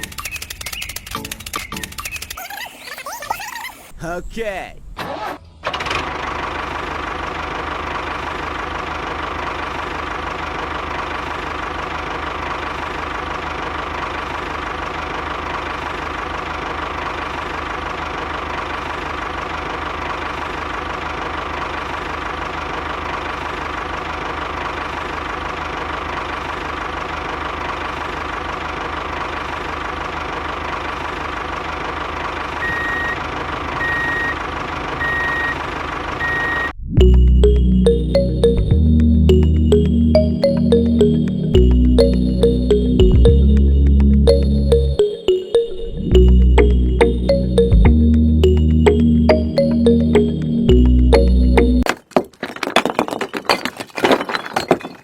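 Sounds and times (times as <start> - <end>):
high electronic beeping: 37.0 - 51.9.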